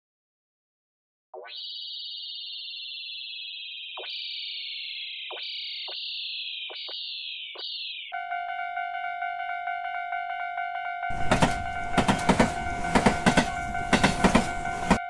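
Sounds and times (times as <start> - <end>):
high synthesized whistle tone: 1.4 - 8.6
railroad crossing bell ringing: 8.2 - 15.0.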